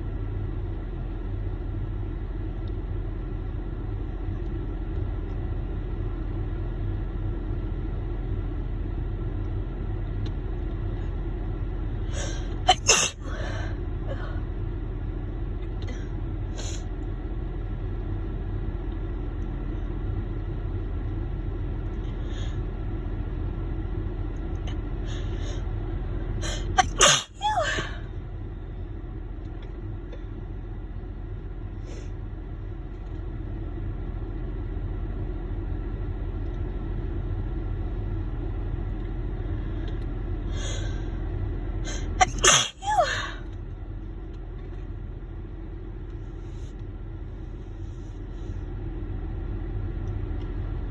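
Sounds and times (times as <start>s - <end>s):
low hum inside car: 0.0s - 50.9s
short breaths: 12.1s - 14.4s
woman sneezing: 12.2s - 13.6s, 26.4s - 28.0s, 41.9s - 43.4s.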